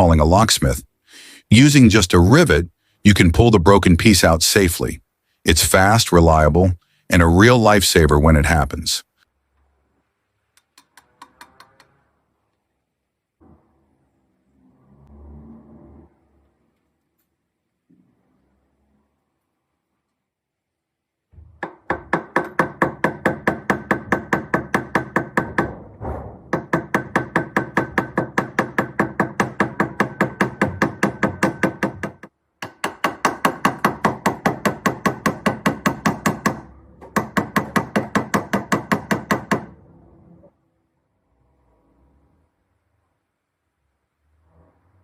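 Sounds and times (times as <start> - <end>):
hammer tapping on metal: 26.5 - 39.7.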